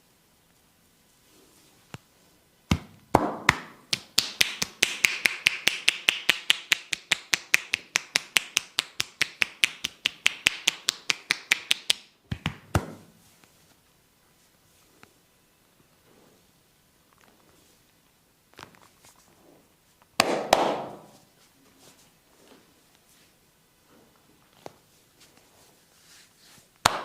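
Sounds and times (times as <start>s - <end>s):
hands striking in head massage: 2.7s - 13.1s, 20.2s - 21.2s.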